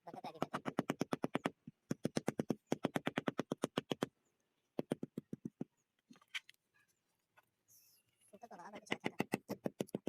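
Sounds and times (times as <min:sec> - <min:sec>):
rapid tapping on wall tiles: 0:00.4 - 0:04.1, 0:04.8 - 0:05.8, 0:08.8 - 0:10.0.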